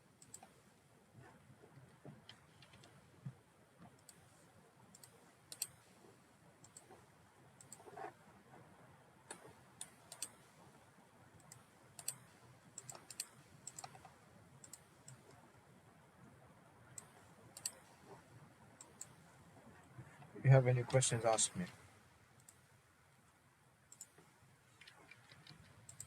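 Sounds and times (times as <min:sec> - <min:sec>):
mouse and keyboard clicking: 0:02.2 - 0:03.0, 0:04.9 - 0:05.8, 0:06.6 - 0:07.0, 0:07.6 - 0:07.9, 0:09.3 - 0:10.4, 0:11.4 - 0:15.4, 0:17.0 - 0:17.9, 0:18.8 - 0:19.2, 0:23.9 - 0:24.2, 0:24.8 - 0:26.0.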